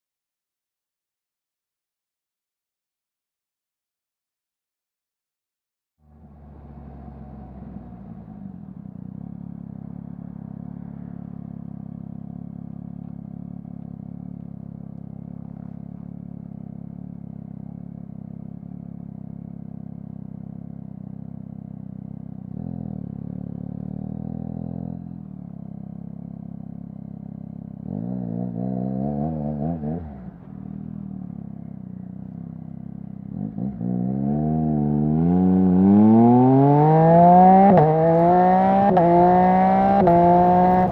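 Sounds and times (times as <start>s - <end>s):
motorcycle engine idling and revving: 6.0s - 40.9s.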